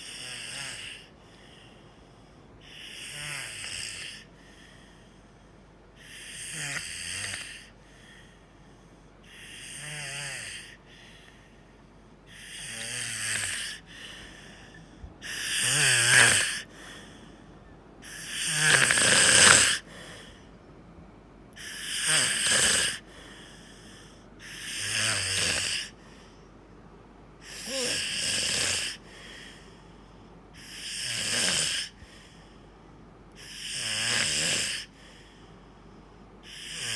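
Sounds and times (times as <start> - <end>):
person snoring: 0.0 - 2.0, 2.6 - 5.1, 6.0 - 8.3, 9.2 - 11.3, 12.3 - 17.3, 18.0 - 20.4, 21.6 - 26.3, 27.4 - 29.8, 30.6 - 32.4, 33.4 - 35.4, 36.4 - 36.9.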